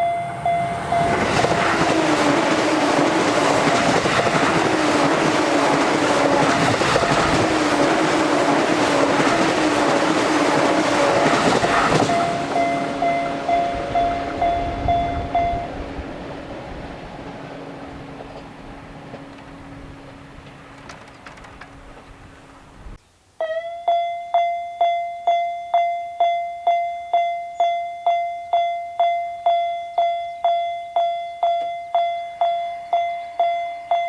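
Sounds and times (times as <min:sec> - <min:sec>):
level-crossing alarm bell ringing: 0:00.0 - 0:16.6, 0:23.4 - 0:34.0
train rushing past: 0:00.0 - 0:23.0.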